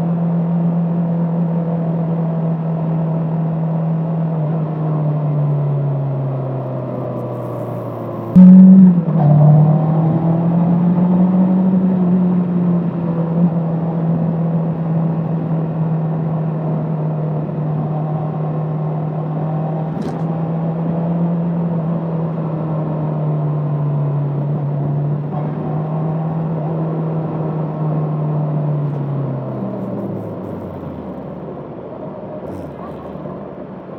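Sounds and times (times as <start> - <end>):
motorcycle engine droning: 2.2 - 33.9
sharp click: 19.9 - 20.4.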